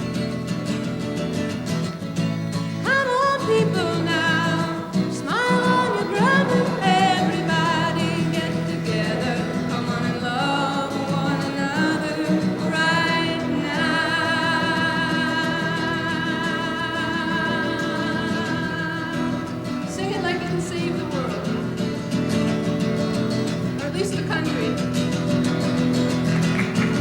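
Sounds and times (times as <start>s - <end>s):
strummed acoustic guitar: 0.0s - 27.0s
woman singing with vibrato: 2.8s - 22.5s, 23.7s - 25.0s.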